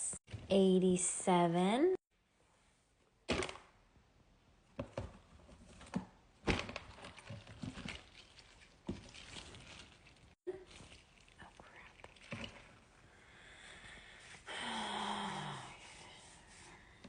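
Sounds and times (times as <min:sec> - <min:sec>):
rustling: 0:06.7 - 0:12.8.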